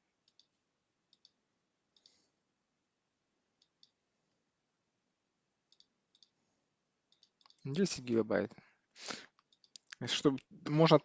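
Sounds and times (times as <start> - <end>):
faint computer mouse clicks: 0.2 - 2.2, 5.7 - 6.4.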